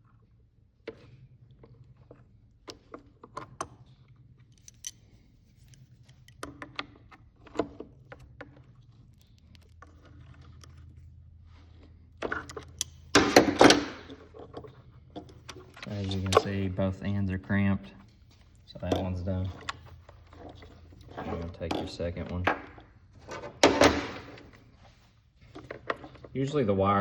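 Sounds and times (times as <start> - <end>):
small metal parts clicking: 4.4 - 6.8, 8.1 - 10.9, 12.2 - 13.7.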